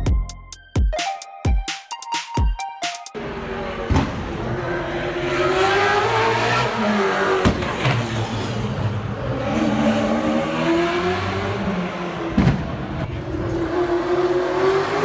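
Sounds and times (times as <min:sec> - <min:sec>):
race cars accelerating: 0:03.2 - 0:15.0.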